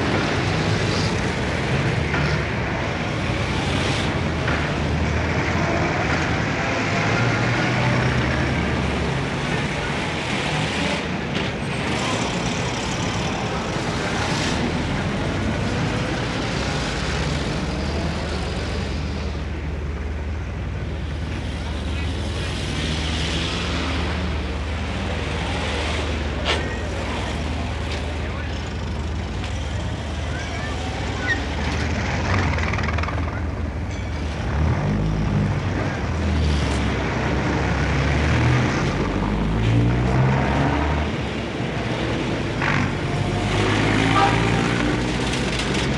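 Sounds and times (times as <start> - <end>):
heavy road traffic: 0.0 - 45.9
large engines humming: 0.0 - 45.9
loud vehicle passing: 34.4 - 45.9.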